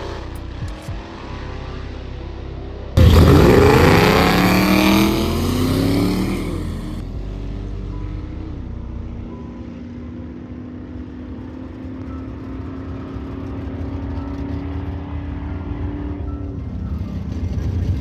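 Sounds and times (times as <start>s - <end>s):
car engine running: 3.0s - 7.0s.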